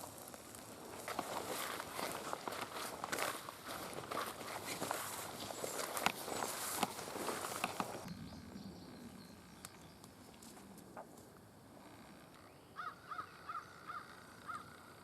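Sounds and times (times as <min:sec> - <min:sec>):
faint outdoor background: 0:00.0 - 0:15.0
bird calling: 0:12.2 - 0:15.0.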